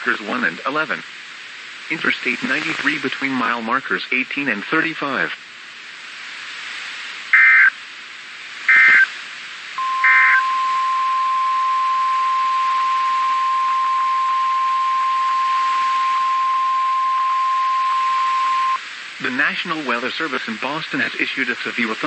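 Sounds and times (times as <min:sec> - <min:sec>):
digital data bursts: 0:08.7 - 0:09.1, 0:09.8 - 0:10.7
steady warning alarm tone: 0:09.8 - 0:18.8.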